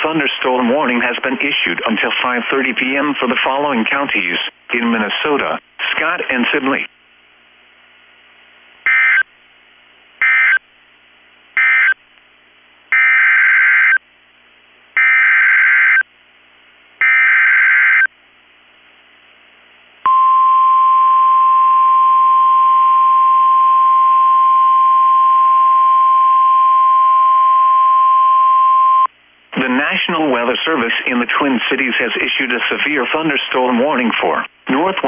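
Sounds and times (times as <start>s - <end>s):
emergency alert data bursts: 8.9s - 9.3s, 10.2s - 10.6s, 11.6s - 12.0s, 12.9s - 14.0s, 15.0s - 16.0s, 17.0s - 18.1s.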